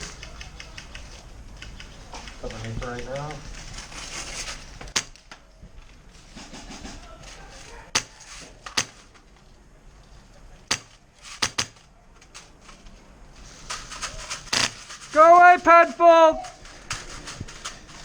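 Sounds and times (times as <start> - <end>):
airsoft gun shots: 7.9 - 9.1, 10.7 - 11.9.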